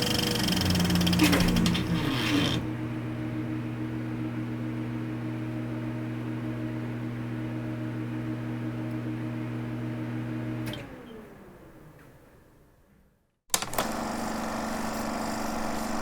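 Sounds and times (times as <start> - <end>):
film projector humming: 0.0 - 6.0, 13.5 - 16.0.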